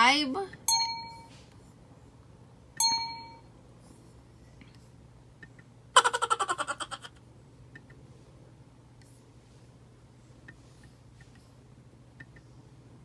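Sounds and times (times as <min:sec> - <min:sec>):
rapid ringing pulses: 0:00.7 - 0:01.3, 0:02.8 - 0:03.4
electronic ding: 0:00.7 - 0:01.4, 0:02.8 - 0:03.4.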